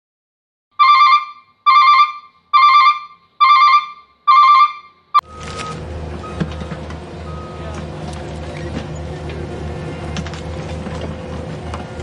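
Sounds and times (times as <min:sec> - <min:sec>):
electronic ringtone tone: 0:00.8 - 0:05.4
steady noisy rumble: 0:05.2 - 0:12.0.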